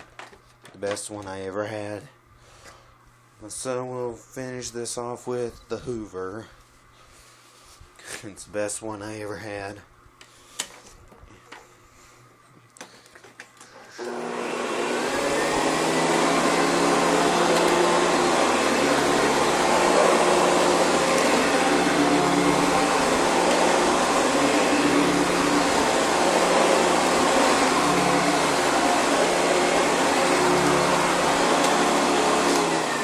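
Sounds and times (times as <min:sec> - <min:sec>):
vacuum cleaner motor: 0:13.7 - 0:33.0.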